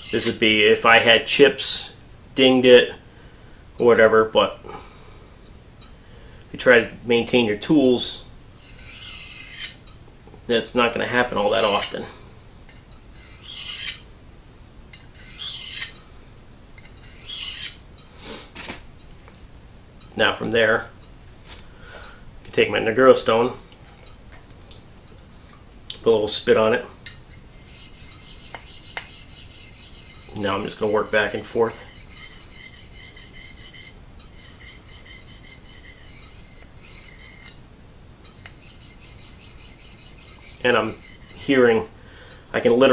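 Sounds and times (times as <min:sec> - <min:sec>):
knife honing on sharpening stone: 0:08.6 - 0:10.0, 0:11.2 - 0:12.0, 0:12.9 - 0:14.0, 0:14.9 - 0:16.0, 0:16.8 - 0:17.8, 0:27.1 - 0:37.6, 0:38.3 - 0:41.6.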